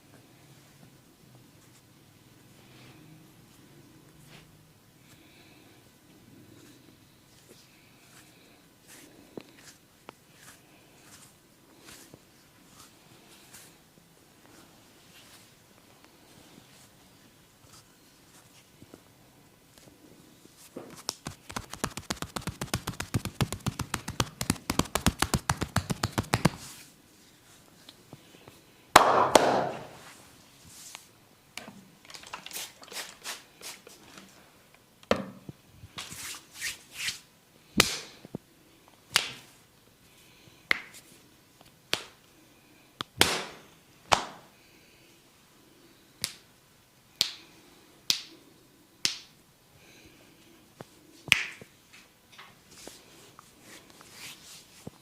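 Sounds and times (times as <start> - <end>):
hand slap: 21.0 - 26.7, 29.0 - 29.9, 37.8 - 38.2, 39.2 - 39.4, 43.2 - 44.4, 48.1 - 48.3, 49.0 - 49.3, 51.3 - 51.6
hands tapping in massage: 21.0 - 26.7
sharp finger snaps: 47.2 - 47.4, 48.1 - 48.3, 49.0 - 49.3.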